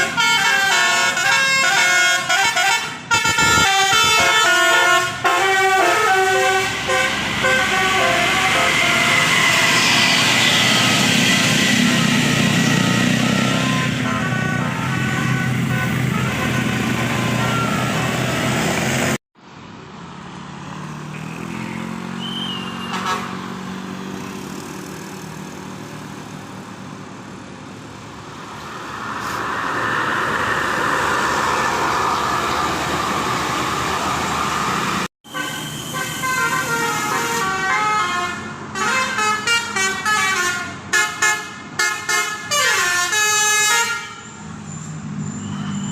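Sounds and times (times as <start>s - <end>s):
melodic multi-tone bus horn: 0.0s - 18.8s, 22.6s - 23.7s, 35.2s - 44.6s
bus engine and road noise: 0.0s - 45.9s.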